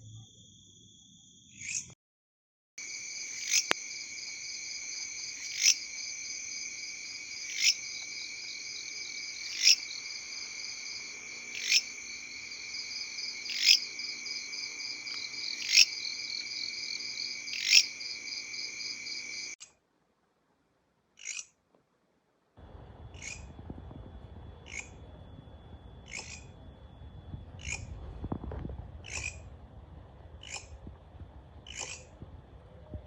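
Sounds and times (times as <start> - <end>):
grasshopper buzzing trill: 2.8 - 19.6
sharp insect krekk call: 2.8 - 19.6.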